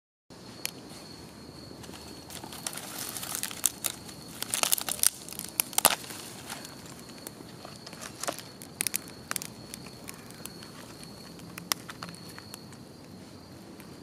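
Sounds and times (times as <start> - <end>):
wood fire crackling: 1.8 - 12.8.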